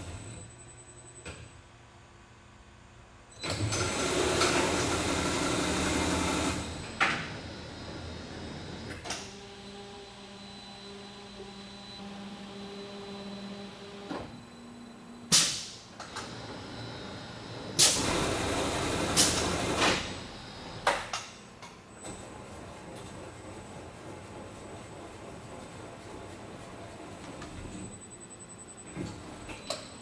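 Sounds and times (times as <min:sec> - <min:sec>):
hissing bursts of air: 0:17.8 - 0:20.1.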